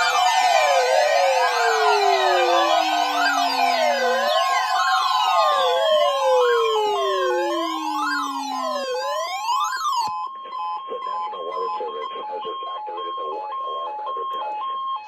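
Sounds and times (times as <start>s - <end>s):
faint voice announcement: 0.0s - 9.3s
two-pitch electronic alert tone: 0.0s - 10.0s
siren wail: 0.0s - 10.2s.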